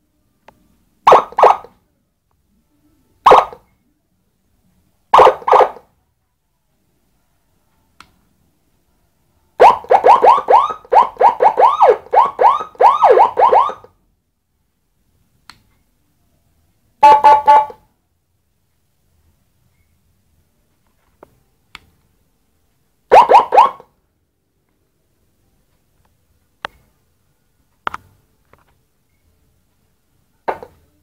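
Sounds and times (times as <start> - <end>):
electronic siren through loudspeaker: 1.1 - 1.7, 5.2 - 5.8, 9.6 - 13.9, 23.1 - 23.9.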